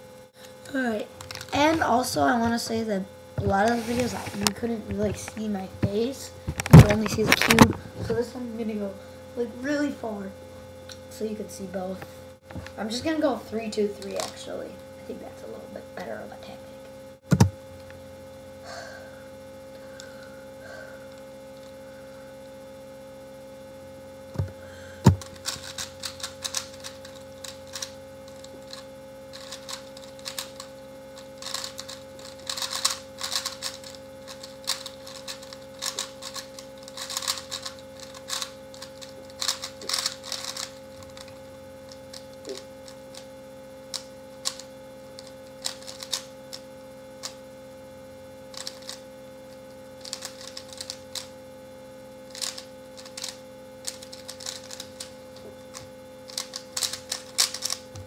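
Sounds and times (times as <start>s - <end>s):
electrical hum: 0.0s - 58.0s
sharp thumps: 17.2s - 17.6s, 24.3s - 27.8s
plastic puzzle cube clicking: 25.3s - 26.8s, 28.7s - 30.6s, 31.4s - 41.3s, 45.2s - 46.3s, 48.5s - 49.0s, 50.0s - 51.3s, 52.3s - 55.1s, 55.7s - 57.8s.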